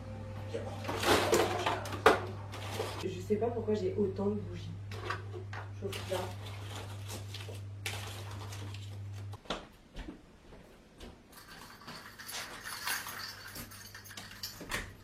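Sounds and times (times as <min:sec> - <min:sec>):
steady low hum: 0:00.0 - 0:04.9.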